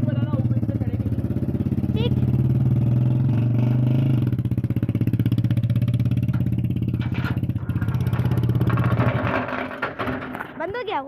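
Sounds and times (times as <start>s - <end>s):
motorcycle engine idling unevenly: 0.0s - 2.8s, 4.2s - 9.0s.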